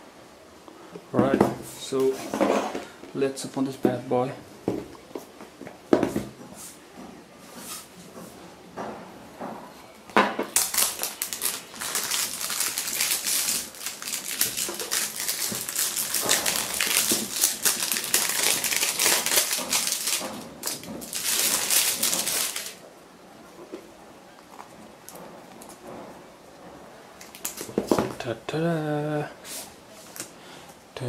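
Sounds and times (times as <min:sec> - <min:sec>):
packaging crackling rustle: 0:10.5 - 0:22.8, 0:27.2 - 0:28.0.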